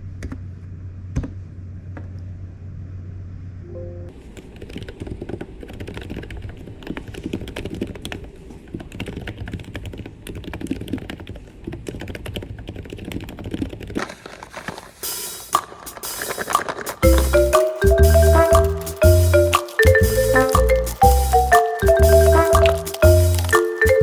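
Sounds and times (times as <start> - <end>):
computer keyboard typing: 8.9 - 14.0, 19.5 - 24.0.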